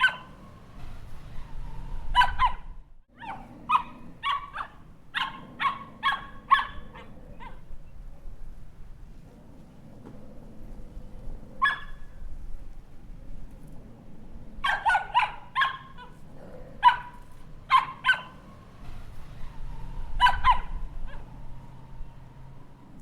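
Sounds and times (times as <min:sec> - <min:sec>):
puppy yapping: 0:00.0 - 0:00.6, 0:02.1 - 0:08.0, 0:11.6 - 0:12.2, 0:14.6 - 0:19.5, 0:20.1 - 0:21.4.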